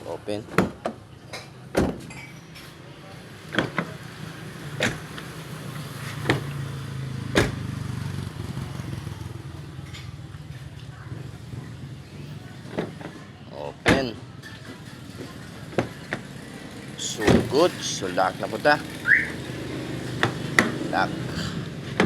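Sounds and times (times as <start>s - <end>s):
car doors and locks clicking: 4.8s - 5.2s, 7.3s - 7.6s.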